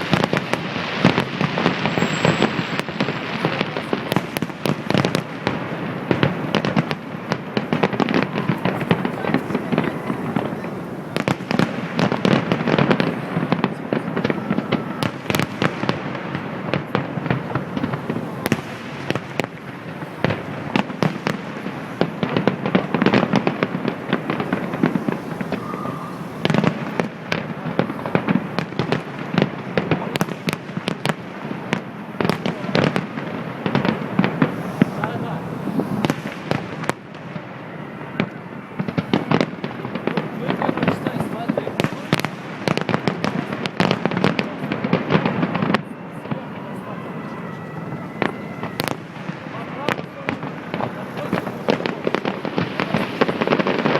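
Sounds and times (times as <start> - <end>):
fireworks bangs and crackling: 0.0 - 53.9.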